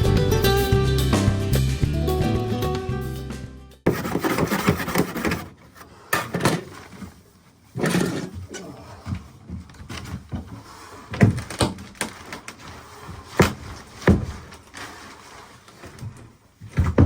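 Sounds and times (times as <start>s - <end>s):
scraping and rubbing: 3.9s - 16.8s
knocks and thuds on wooden floor: 13.4s - 14.5s, 16.7s - 17.0s.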